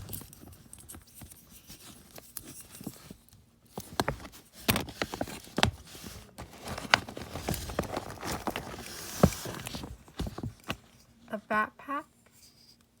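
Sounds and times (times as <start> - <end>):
rustling: 0.0 - 11.2.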